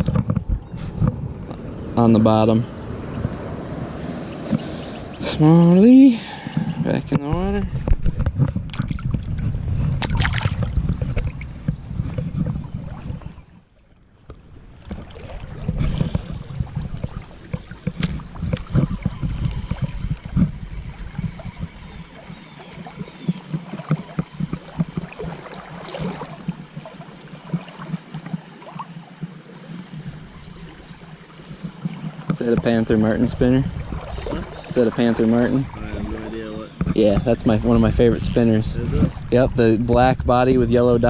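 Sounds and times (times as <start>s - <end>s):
wind rumble on microphone: 0.0s - 41.0s
water sloshing around legs: 8.7s - 13.6s, 14.2s - 39.4s.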